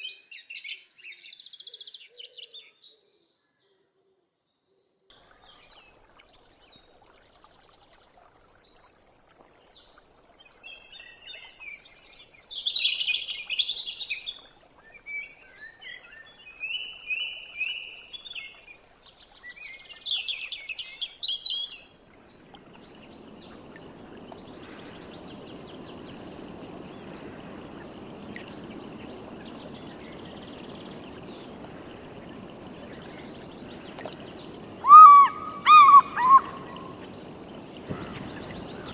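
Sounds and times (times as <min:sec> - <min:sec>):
running water rushing: 0:05.1 - 0:38.9
songbirds chirping and trilling: 0:19.4 - 0:38.9.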